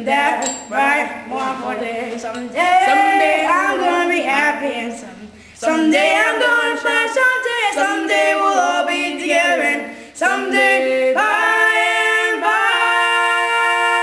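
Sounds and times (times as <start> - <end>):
two men singing a cappella: 0.0 - 14.0.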